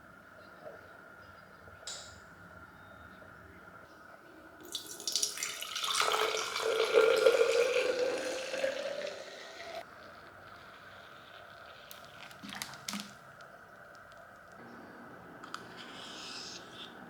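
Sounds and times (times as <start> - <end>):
water running from a tap: 4.6 - 9.8.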